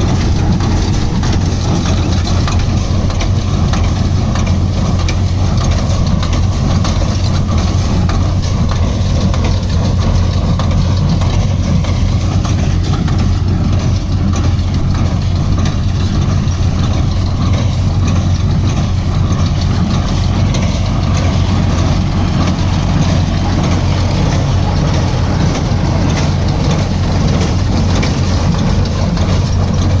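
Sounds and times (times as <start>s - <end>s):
heavy machinery hum and clatter: 0.0s - 30.0s.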